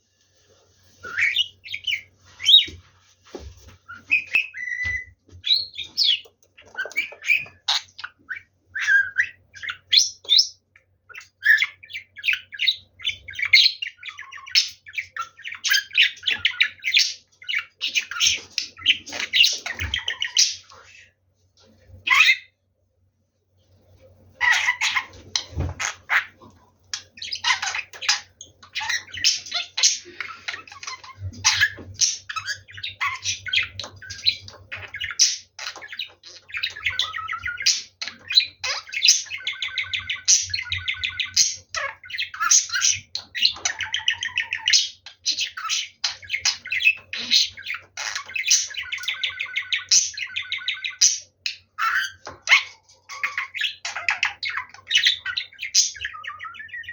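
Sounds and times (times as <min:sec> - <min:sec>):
budgerigar chattering: 0:24.4 - 0:56.9.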